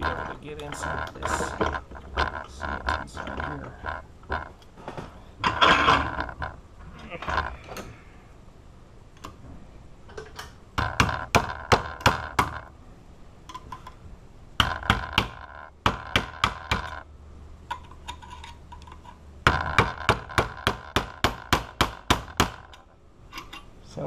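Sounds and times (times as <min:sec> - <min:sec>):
hammer knocking on metal padlock: 0:19.5 - 0:22.7.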